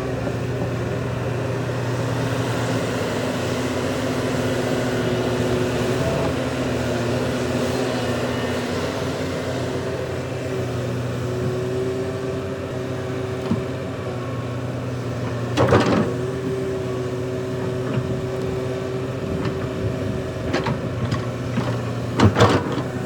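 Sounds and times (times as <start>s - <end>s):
heavy diesel engine running: 0.0s - 23.0s.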